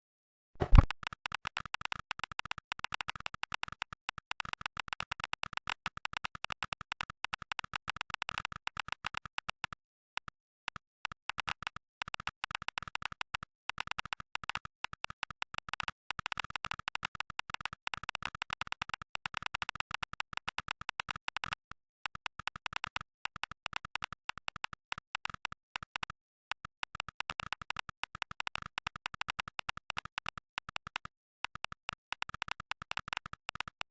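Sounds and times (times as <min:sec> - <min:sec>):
loud thump: 0:00.6 - 0:00.9
fast typing on mechanical keyboard: 0:00.7 - 0:09.4, 0:11.3 - 0:33.9.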